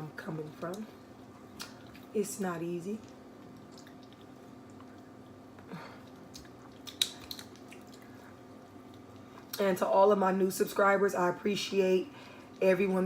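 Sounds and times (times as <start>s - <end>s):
wet chewing sounds: 1.2s - 2.2s, 2.9s - 9.6s.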